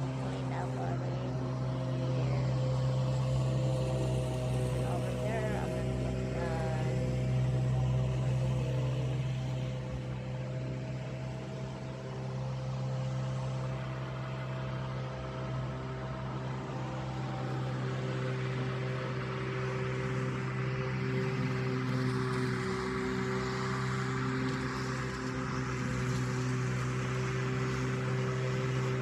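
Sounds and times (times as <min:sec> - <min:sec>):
lawn mower engine running: 0:00.0 - 0:29.0.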